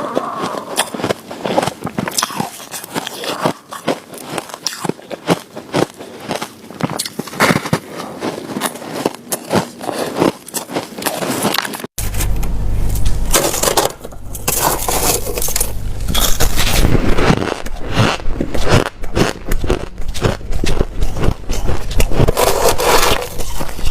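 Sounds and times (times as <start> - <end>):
ice being chewed and crunched: 0.0 - 11.9, 14.4 - 23.9
low rumble: 12.0 - 23.9.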